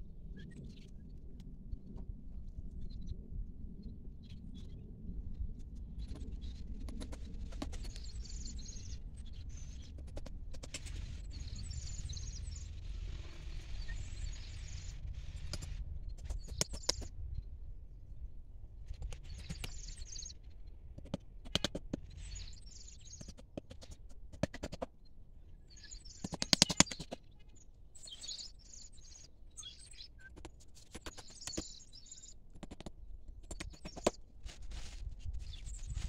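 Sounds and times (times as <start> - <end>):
small birds chirping: 6.0 - 17.5, 18.9 - 24.8, 25.4 - 34.2, 34.8 - 36.0.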